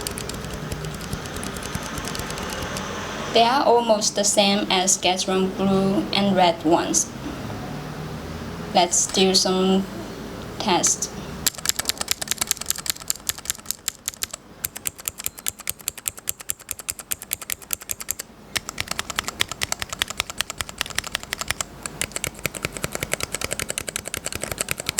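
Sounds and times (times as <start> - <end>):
mechanical keyboard typing: 0.0 - 3.0, 11.4 - 24.9.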